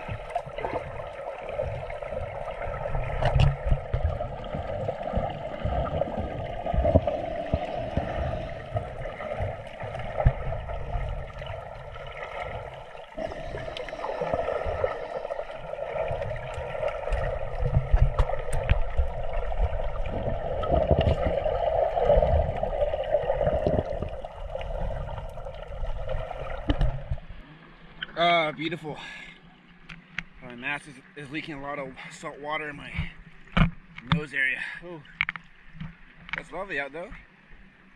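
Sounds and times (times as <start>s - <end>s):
low underwater thumps: 0.0s - 27.4s
muffled water gurgling and sloshing: 0.0s - 37.9s.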